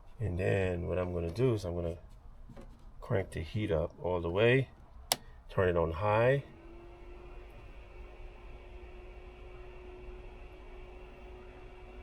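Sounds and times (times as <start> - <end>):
electric heater hum: 3.1 - 12.0.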